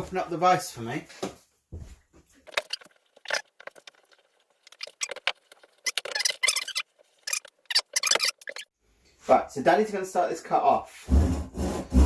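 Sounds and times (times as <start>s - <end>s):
vise clicks scrapes and knocks: 2.4s - 8.7s.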